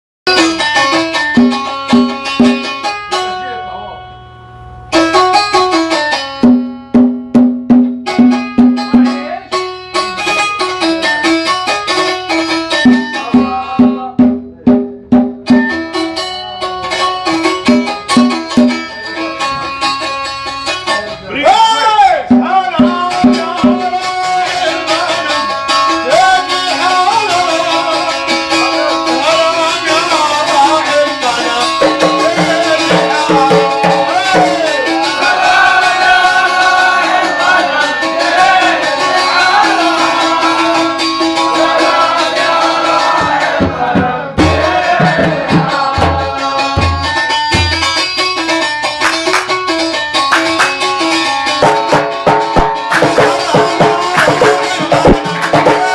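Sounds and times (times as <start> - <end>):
heavy drum strokes: 0.3 - 3.4, 4.9 - 49.7, 50.3 - 55.9
folk band playing: 0.3 - 55.9
wavering melodic line: 15.7 - 21.3.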